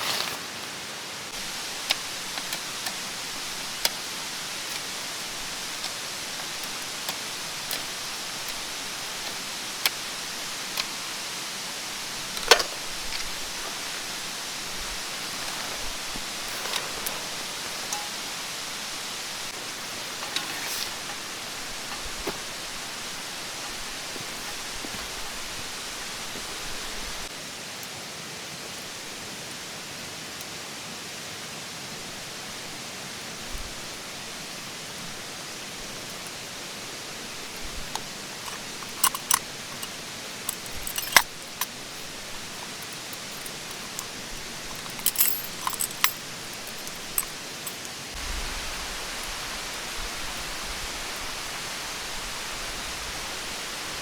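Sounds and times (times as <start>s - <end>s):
mountain stream rushing: 0.0s - 54.0s
metallic clinks and jingles: 37.9s - 47.9s.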